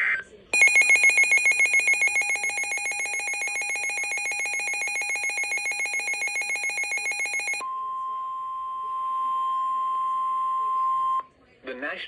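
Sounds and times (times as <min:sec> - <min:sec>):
electronic alarm trill: 0:00.6 - 0:07.6.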